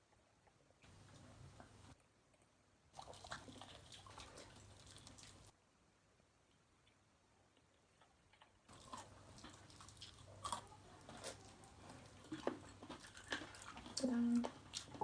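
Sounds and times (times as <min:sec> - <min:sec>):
chewing and lip-smacking: 0:02.3 - 0:05.5, 0:06.8 - 0:15.0
food crunching: 0:02.4 - 0:05.5, 0:06.5 - 0:15.0.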